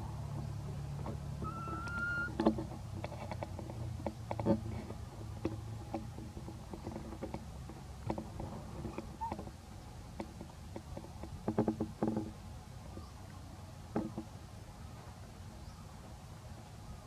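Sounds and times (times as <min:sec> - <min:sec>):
macaque coo call: 0:01.4 - 0:02.4
sharp taps and knocks: 0:13.9 - 0:14.3.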